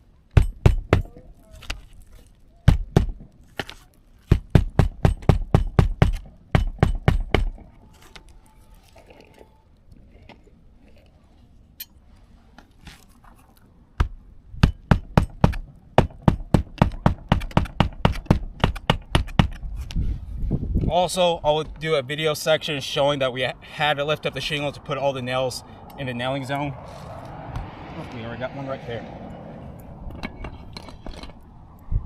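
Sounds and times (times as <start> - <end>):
hammer driving nails into shingles: 2.7 - 7.6, 14.0 - 19.6.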